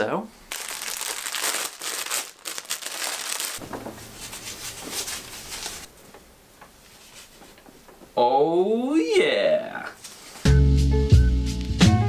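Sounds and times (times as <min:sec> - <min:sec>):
paper packaging crinkling: 0:00.5 - 0:06.0
soft knocks: 0:03.6 - 0:05.1.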